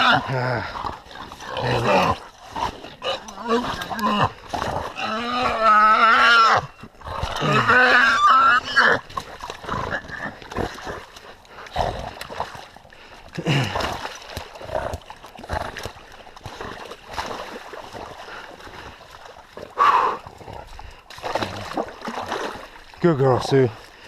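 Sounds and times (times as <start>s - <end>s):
hog grunt: 0.0s - 12.3s
splashing and thrashing in water: 0.0s - 24.0s
hog squealing: 7.4s - 9.0s.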